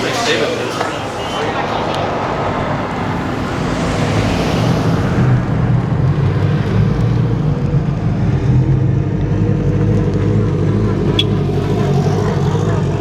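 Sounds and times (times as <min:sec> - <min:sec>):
car engine humming: 0:00.0 - 0:13.0
hissing noise: 0:01.0 - 0:06.0.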